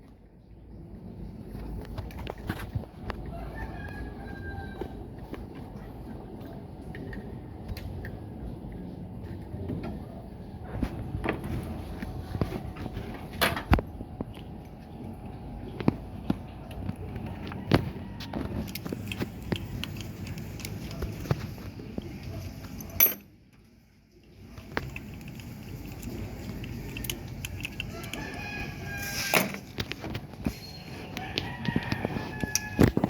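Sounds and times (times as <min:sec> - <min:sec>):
hand tools and metal parts clinking: 0:22.8 - 0:23.3, 0:29.0 - 0:30.9.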